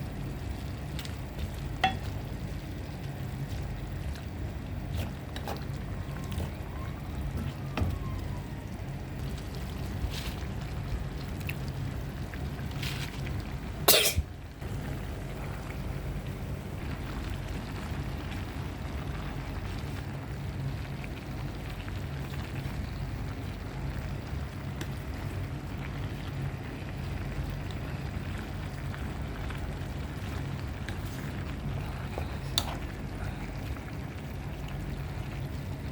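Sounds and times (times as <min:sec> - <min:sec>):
person coughing: 0:13.9 - 0:14.2.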